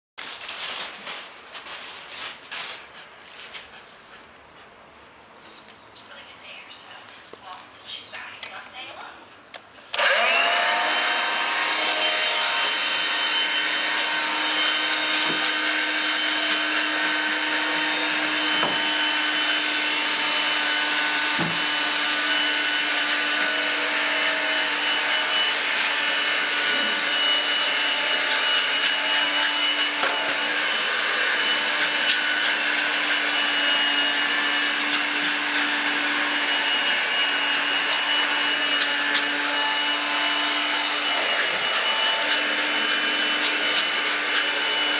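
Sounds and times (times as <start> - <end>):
vacuum cleaner motor whine: 9.9 - 44.9.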